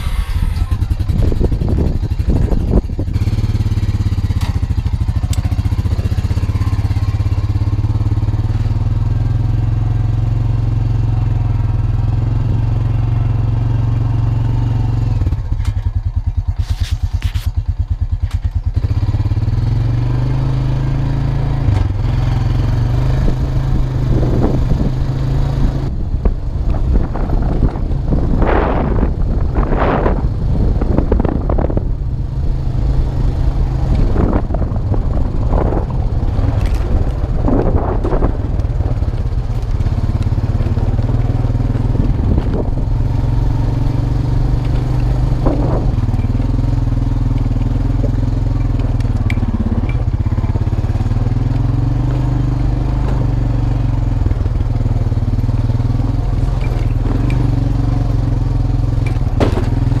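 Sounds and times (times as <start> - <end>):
quad engine running: 0.0 - 60.0
knocks and rattles: 59.0 - 60.0.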